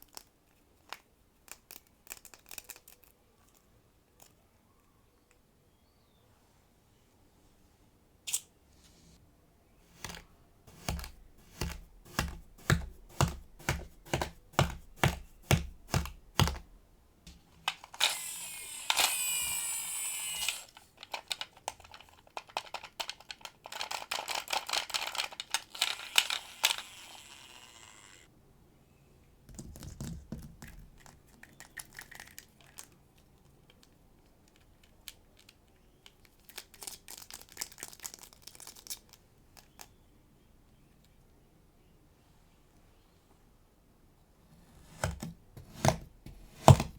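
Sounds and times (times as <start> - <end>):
steady tapping: 10.0 - 16.7.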